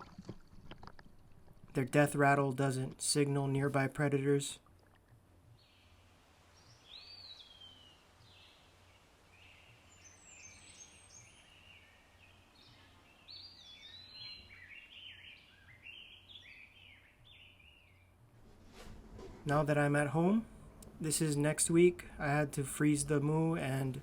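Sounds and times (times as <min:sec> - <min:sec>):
birds chirping and whistling: 0:09.4 - 0:12.0, 0:12.6 - 0:18.1.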